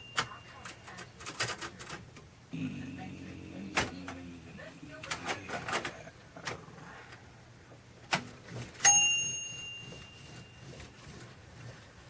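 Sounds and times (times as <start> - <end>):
typewriter bell ding: 0.0 - 1.0, 8.8 - 10.6.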